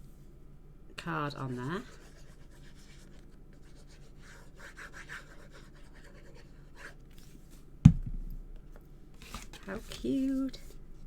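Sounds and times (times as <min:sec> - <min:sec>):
sharp thump: 0:07.9 - 0:08.6.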